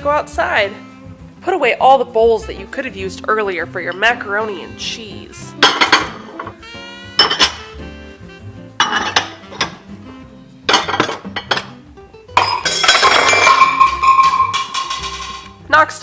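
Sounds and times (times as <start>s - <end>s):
light background music: 0.0s - 16.0s
bowls clattering and clinking: 5.4s - 6.6s, 7.2s - 7.7s, 8.8s - 9.9s, 10.7s - 11.8s, 12.4s - 15.6s.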